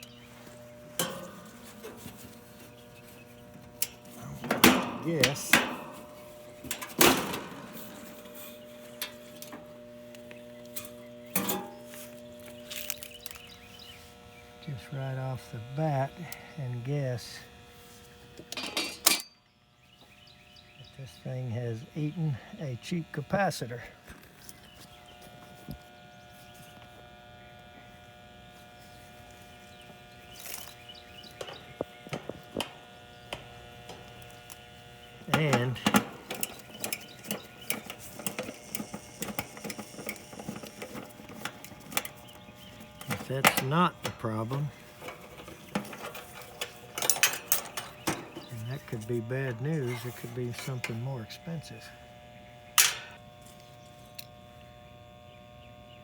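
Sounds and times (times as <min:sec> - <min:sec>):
compressor electrical buzz: 0:00.0 - 0:56.0
tools clicking and knocking on unit: 0:01.0 - 0:02.2, 0:03.8 - 0:06.0, 0:08.9 - 0:11.8, 0:31.3 - 0:34.3, 0:35.3 - 0:49.1, 0:52.8 - 0:53.2.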